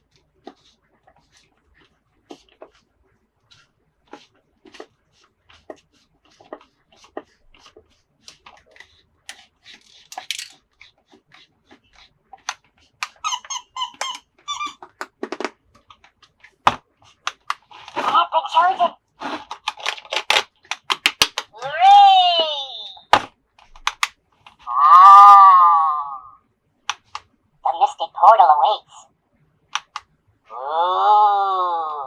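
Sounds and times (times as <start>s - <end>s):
plastic clicks and taps: 10.1s - 10.5s, 20.9s - 21.4s, 23.9s - 24.1s.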